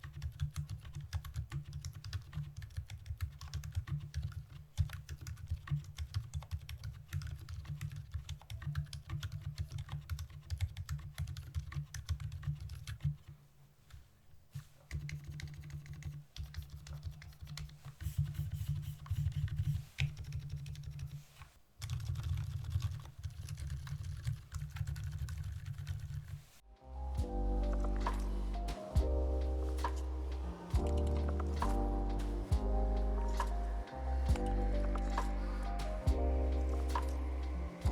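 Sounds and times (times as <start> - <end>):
typing on mechanical keyboard: 0.0 - 13.3, 14.9 - 21.2, 21.8 - 26.4.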